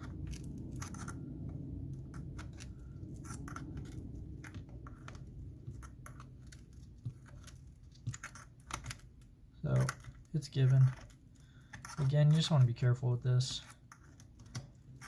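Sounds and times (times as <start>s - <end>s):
low hum: 0.0s - 10.2s.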